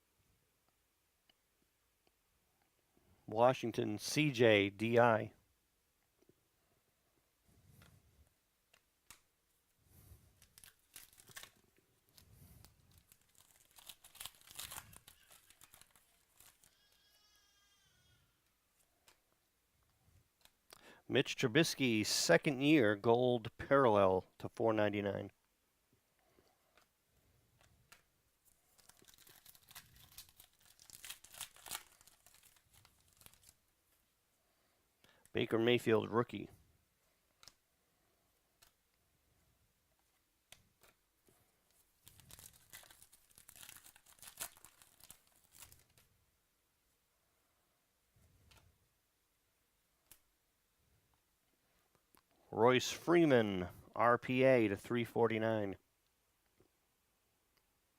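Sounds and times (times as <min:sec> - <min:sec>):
foil wrappers crinkling: 0:10.2 - 0:17.2, 0:28.5 - 0:33.6, 0:41.7 - 0:46.1.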